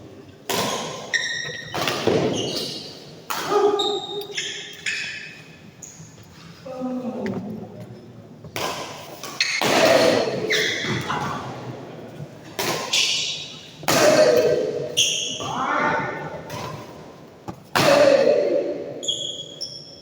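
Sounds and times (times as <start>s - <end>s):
racket hitting shuttlecock: 0.5s - 1.0s, 12.6s - 14.8s.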